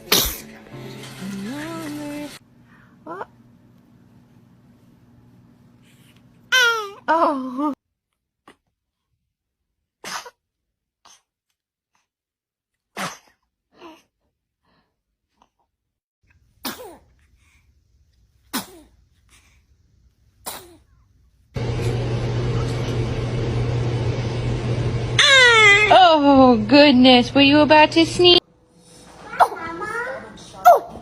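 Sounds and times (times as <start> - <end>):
babies sneezing: 0.0 - 0.6, 10.0 - 10.4, 12.9 - 14.1, 16.6 - 17.1, 18.5 - 19.0, 20.4 - 20.9, 29.2 - 31.0
loud steady noise with low hum: 21.6 - 28.4.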